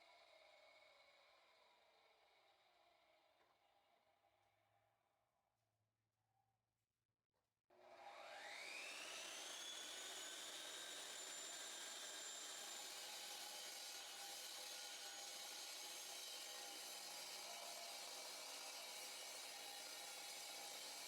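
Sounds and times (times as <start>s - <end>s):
concrete saw whining: 8.0s - 21.0s.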